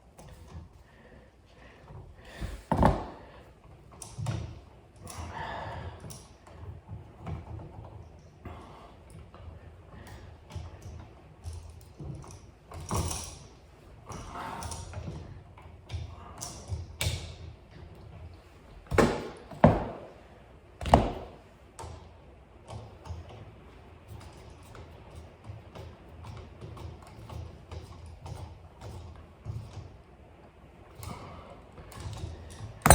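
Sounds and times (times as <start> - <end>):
handling clicks and knocks: 31.9 - 32.9.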